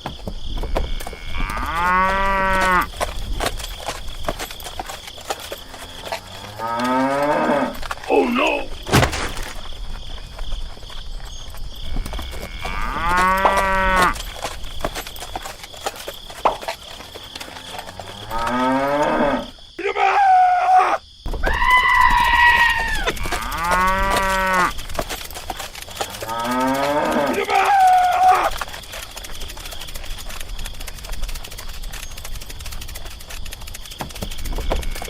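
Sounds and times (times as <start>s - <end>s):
cattle mooing: 5.6s - 8.7s, 12.2s - 14.2s, 17.4s - 19.5s, 22.8s - 24.7s, 26.0s - 28.5s.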